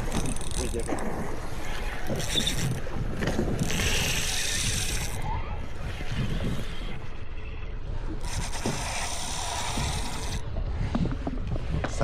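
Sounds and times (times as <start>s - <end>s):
fishing reel ratcheting: 0.0s - 1.0s, 1.9s - 2.8s, 3.6s - 5.2s, 8.2s - 10.4s
boat engine rumble: 0.0s - 12.0s
wind buffeting microphone: 0.0s - 12.0s.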